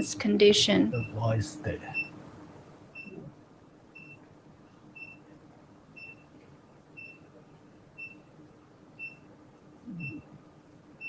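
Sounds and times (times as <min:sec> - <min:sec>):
high electronic beeps: 0:01.0 - 0:01.3
low vocal sound: 0:09.9 - 0:10.2.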